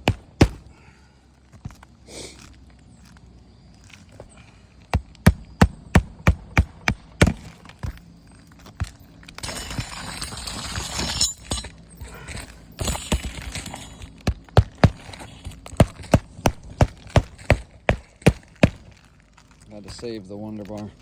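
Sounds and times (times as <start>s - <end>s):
hammer striking nails: 0.0s - 0.7s, 5.0s - 8.0s, 12.8s - 19.0s
scraping on roof: 9.4s - 19.1s.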